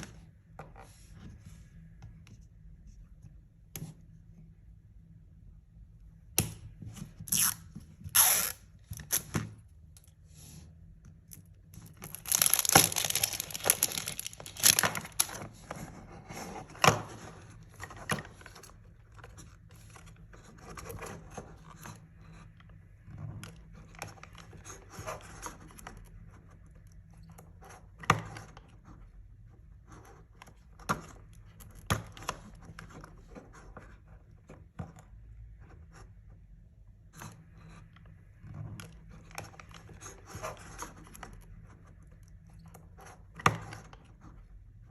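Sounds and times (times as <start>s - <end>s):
plastic pieces clicking: 12.0s - 15.3s
plastic packaging crinkling: 12.0s - 15.4s.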